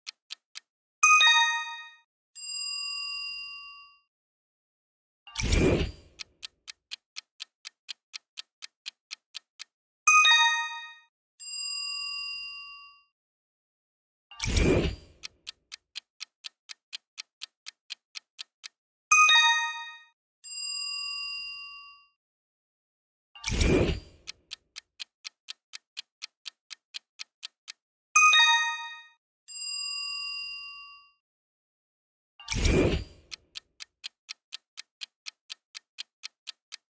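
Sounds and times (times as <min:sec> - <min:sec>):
clock-like countdown ticking: 0:00.0 - 0:02.0, 0:05.4 - 0:11.0, 0:14.4 - 0:20.1, 0:23.5 - 0:29.2, 0:32.6 - 0:36.9.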